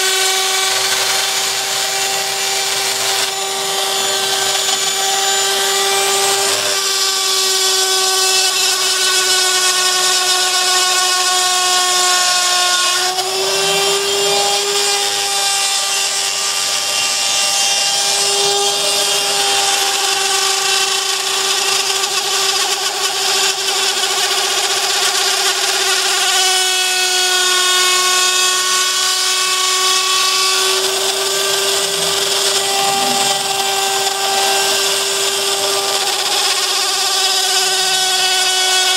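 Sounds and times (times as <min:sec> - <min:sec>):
spindle motor whining: 0:27.4 - 0:38.7.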